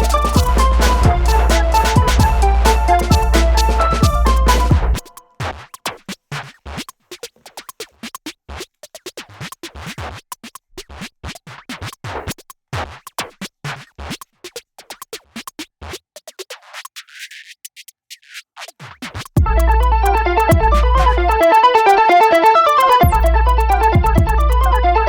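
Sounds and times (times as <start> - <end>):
electronic music with scratchy clicks: 0.0 - 6.9, 15.9 - 25.0.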